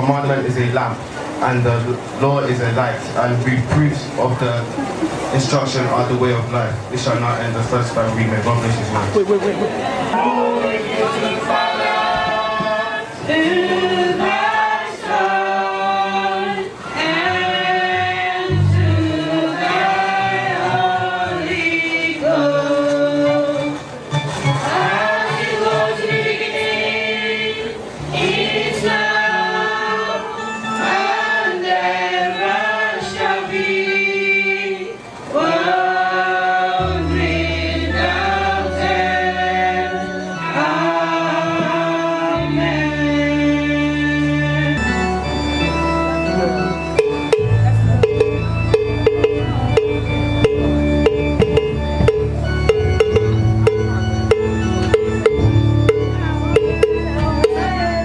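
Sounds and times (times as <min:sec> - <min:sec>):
choir singing a hymn: 0:09.6 - 0:46.6
low sustained bass notes: 0:17.4 - 0:23.7, 0:42.3 - 0:58.0
drums and percussion beat: 0:47.0 - 0:57.8.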